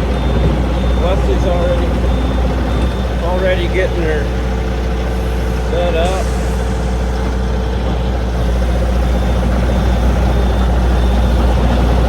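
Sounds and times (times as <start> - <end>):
truck engine rumbling: 0.0 - 12.0.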